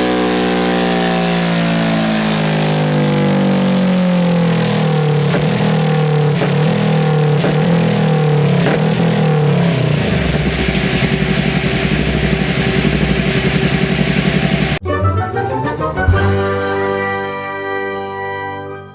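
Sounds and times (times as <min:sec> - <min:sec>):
motorcycle engine revving and idling: 0:00.0 - 0:14.8.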